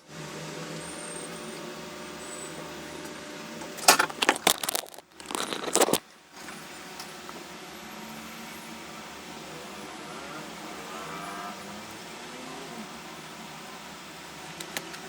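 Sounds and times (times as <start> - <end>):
small hard objects clattering: 3.8 - 6.0.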